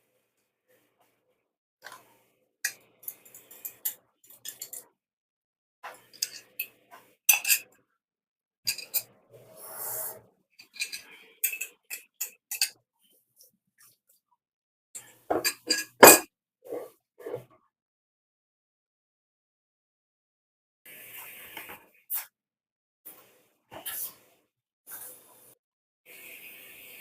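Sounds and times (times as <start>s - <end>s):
utensils and dishes clattering: 8.7s - 9.1s, 15.3s - 16.2s.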